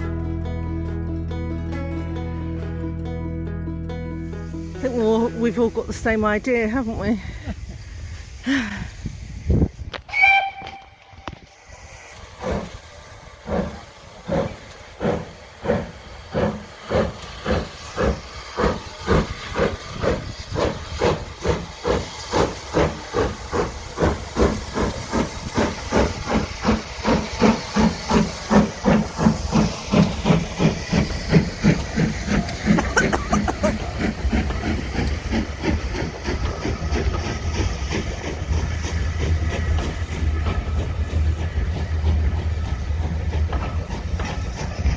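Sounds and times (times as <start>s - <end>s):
steam locomotive chuffing: 4.7s - 44.9s
steam locomotive whistle: 10.1s - 11.5s.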